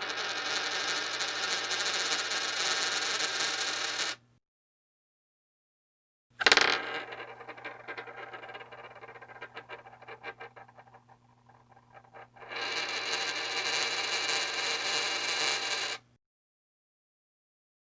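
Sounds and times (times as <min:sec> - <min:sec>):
coin spinning and rattling: 0:00.0 - 0:04.2, 0:06.4 - 0:16.0.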